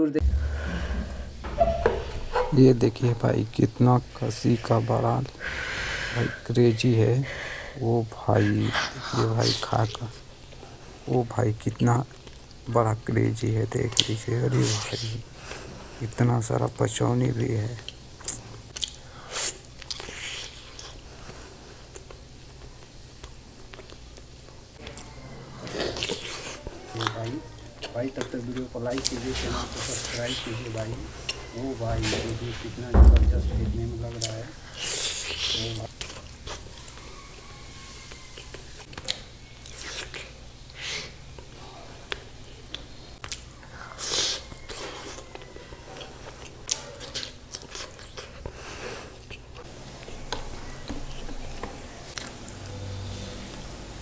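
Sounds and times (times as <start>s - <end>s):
person chewing meat: 17.8s - 28.7s, 34.9s - 37.3s, 38.0s - 52.6s.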